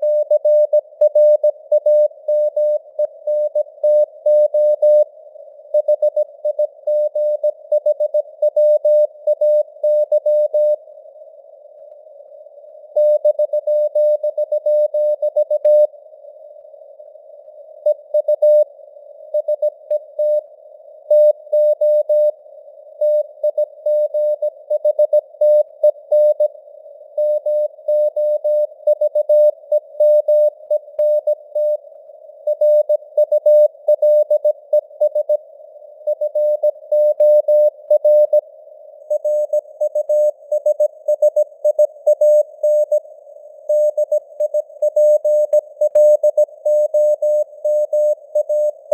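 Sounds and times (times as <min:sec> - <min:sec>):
faint radio noise hiss: 0:09.1 - 0:13.0, 0:13.6 - 0:21.5, 0:22.2 - 0:48.9.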